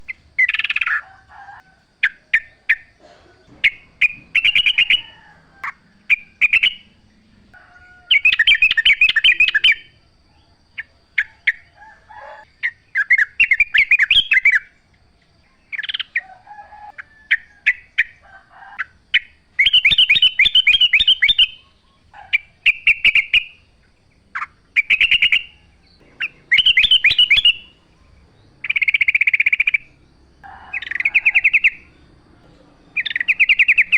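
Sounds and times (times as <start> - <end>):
bird singing bubbly phrases: 0.0 - 1.1, 2.0 - 7.4, 8.1 - 10.0, 19.2 - 30.0, 30.8 - 33.9
sharp bird chirps: 0.0 - 1.3, 2.0 - 7.5, 8.1 - 16.3, 18.8 - 33.9.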